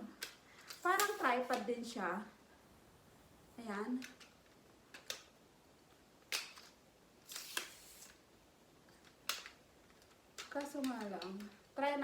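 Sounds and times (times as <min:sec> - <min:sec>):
easel clicks and knocks: 0:08.9 - 0:11.8.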